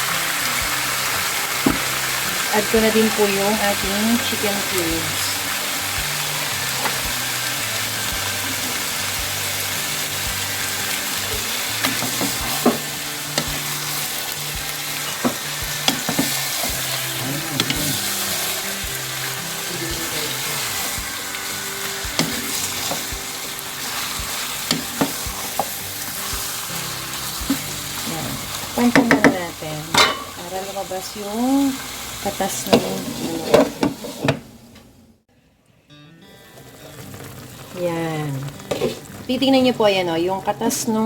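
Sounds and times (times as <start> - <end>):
chicken sizzling in hot oil: 0.0 - 34.6, 36.5 - 41.0
utensil scraping a pan: 8.3 - 14.3, 15.0 - 18.8, 21.9 - 27.7, 32.7 - 34.5, 38.6 - 39.1.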